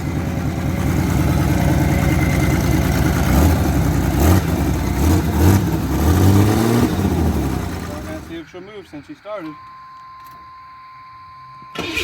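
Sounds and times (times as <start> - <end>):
car engine idling and revving: 0.0 - 9.2.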